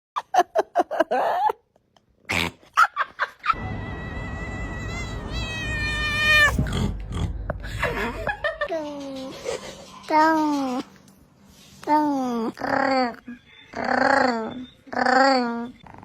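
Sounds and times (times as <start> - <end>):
cat long high call: 3.6 - 6.6
cat chirping: 3.8 - 6.6.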